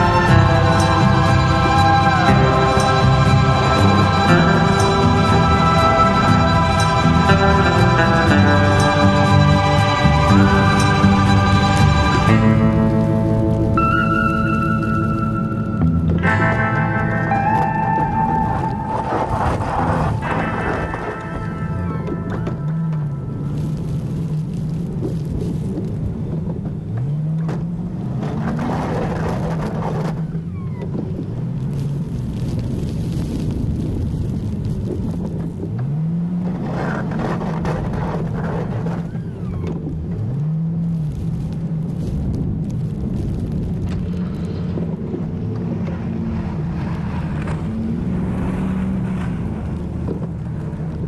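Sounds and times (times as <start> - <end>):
rushing noise: 0.0 - 26.5, 42.8 - 51.0
pickup truck engine running: 0.0 - 51.0.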